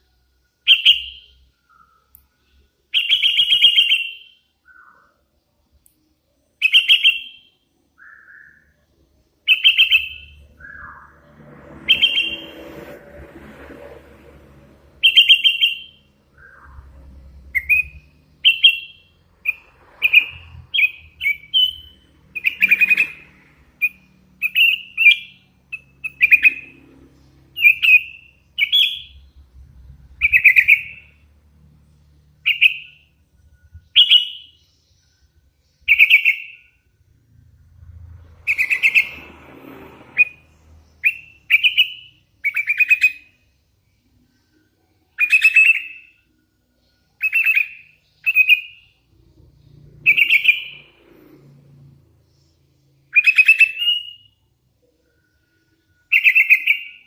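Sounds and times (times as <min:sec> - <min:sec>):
bulbul chirping: 0:09.5 - 0:11.1, 0:17.5 - 0:26.8, 0:30.2 - 0:31.2.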